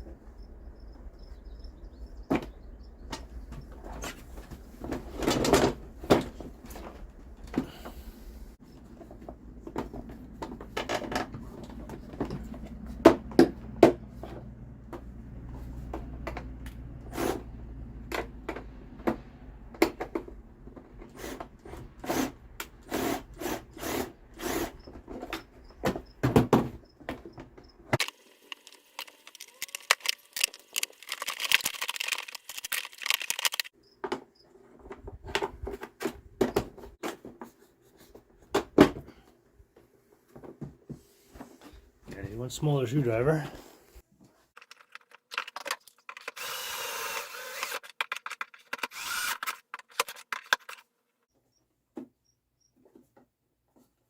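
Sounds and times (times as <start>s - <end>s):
tools and parts clinking: 27.2s - 33.8s, 44.6s - 50.9s.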